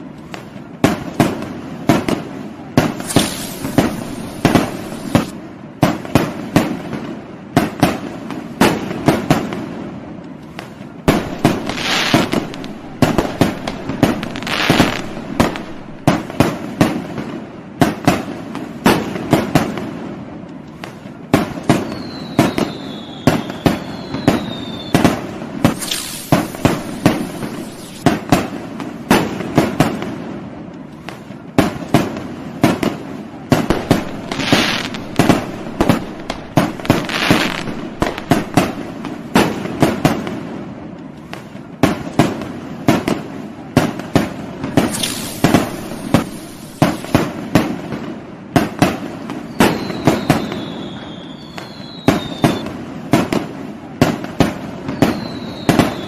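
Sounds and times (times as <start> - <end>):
fireworks crackling hiss: 0.0 - 56.0
fireworks banging: 0.1 - 9.7, 10.6 - 20.0, 20.9 - 30.4, 31.2 - 40.7, 41.4 - 50.8, 51.5 - 56.0
fireworks whistling: 0.8 - 5.4, 10.7 - 17.3, 21.4 - 28.6, 32.0 - 40.4, 43.8 - 53.4, 54.4 - 56.0.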